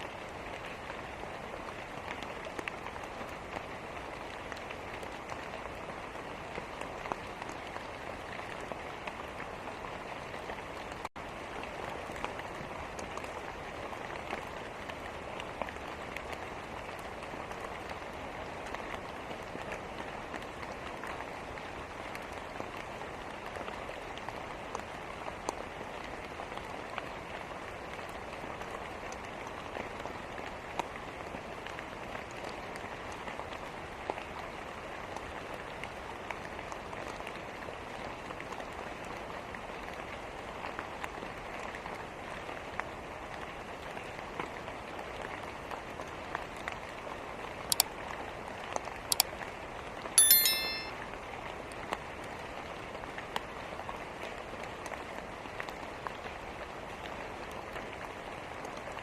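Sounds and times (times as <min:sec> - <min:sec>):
steady rain falling: 0:00.0 - 0:50.1, 0:51.6 - 0:59.0.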